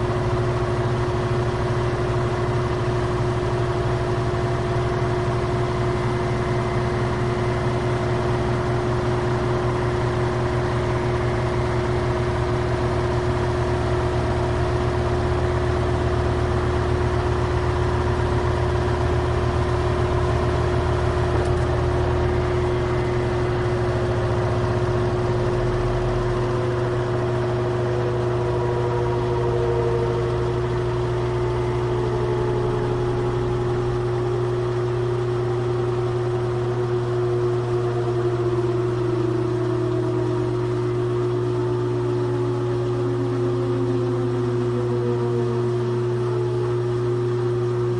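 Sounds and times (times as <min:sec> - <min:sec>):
washing machine running: 0:00.0 - 0:47.9
tones sliding in pitch: 0:25.2 - 0:47.8.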